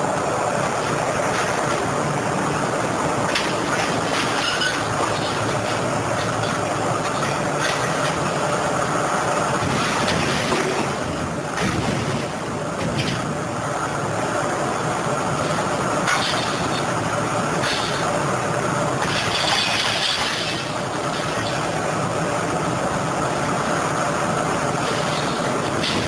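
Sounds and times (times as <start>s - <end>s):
heavy machinery rumbling: 0.0s - 26.0s
sharp knocks and clanks: 16.0s - 16.9s, 17.6s - 18.1s, 19.0s - 21.7s, 24.9s - 26.0s.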